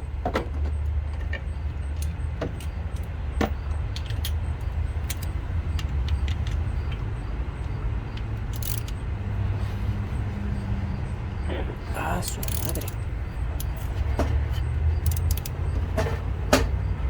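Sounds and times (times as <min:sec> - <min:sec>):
hand tools clinking on metal: 0:08.2 - 0:09.2, 0:11.9 - 0:16.9.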